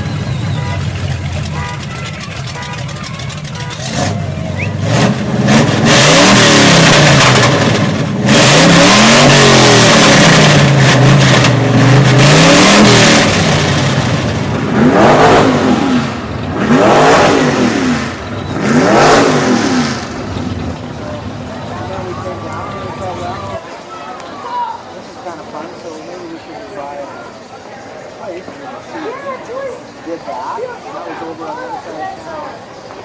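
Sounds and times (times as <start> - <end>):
car engine revving: 0.0 - 23.6.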